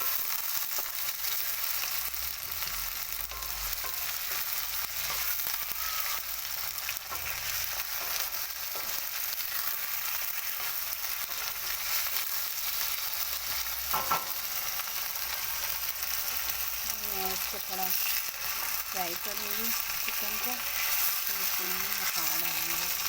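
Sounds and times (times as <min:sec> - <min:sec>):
chicken sizzling in hot oil: 0:00.0 - 0:23.0.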